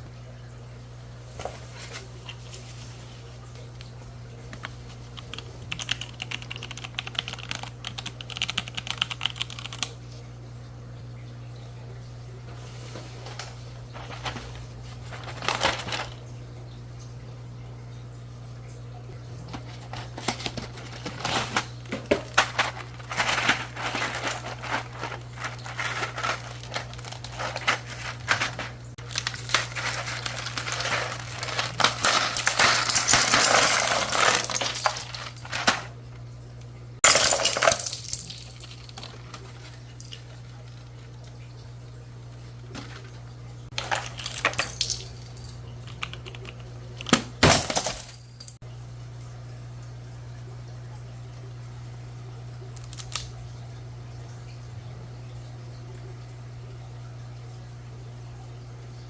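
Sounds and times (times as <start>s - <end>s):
keyboard keycaps clicking and clattering: 4.6s - 9.9s.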